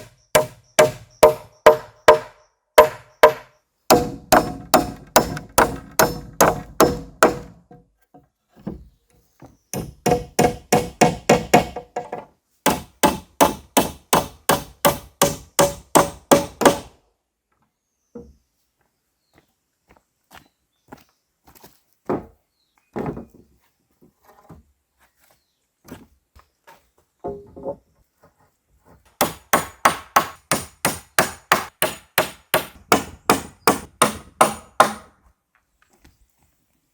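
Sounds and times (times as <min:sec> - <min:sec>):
hand tool striking wood: 0:00.0 - 0:07.9, 0:09.8 - 0:16.9, 0:29.1 - 0:35.2.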